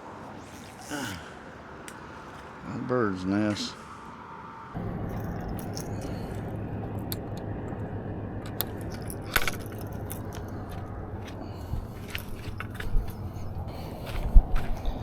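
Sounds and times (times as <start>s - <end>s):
steady low rush: 1.3s - 15.0s
footsteps on rocks: 9.4s - 15.0s.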